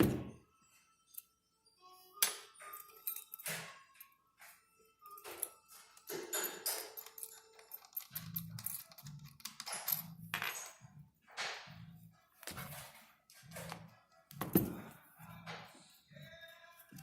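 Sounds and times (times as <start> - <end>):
metal parts and tools clinking: 2.2 - 4.1, 5.0 - 11.7, 12.4 - 17.0.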